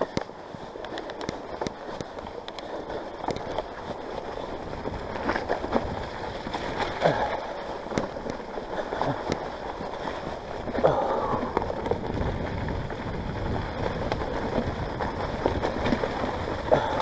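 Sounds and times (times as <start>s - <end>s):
bike knocking and rattling: 0.0s - 17.0s
tyres splashing through mud: 2.7s - 17.0s.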